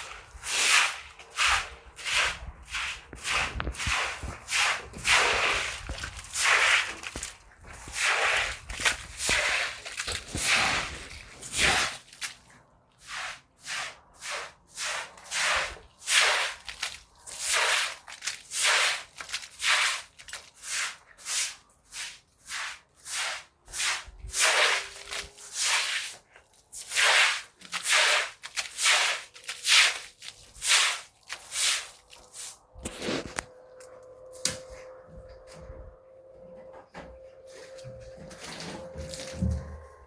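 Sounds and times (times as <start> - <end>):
swishing cleaning strokes: 0.0 - 12.2, 13.0 - 32.6.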